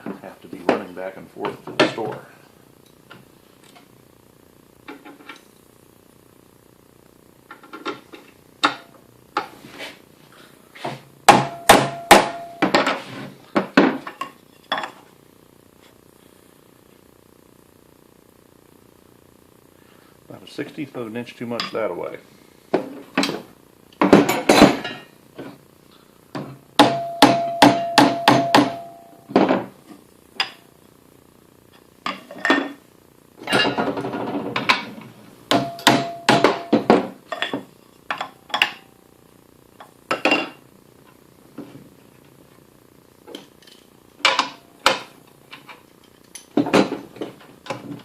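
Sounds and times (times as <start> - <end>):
taps and knocks on metal: 26.8 - 29.7, 35.5 - 37.5.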